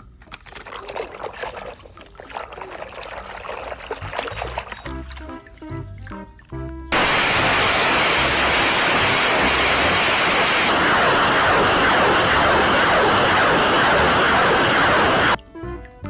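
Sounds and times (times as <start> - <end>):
water spraying: 0.0 - 6.3, 6.9 - 15.4
light background music: 4.0 - 7.0, 15.4 - 16.0.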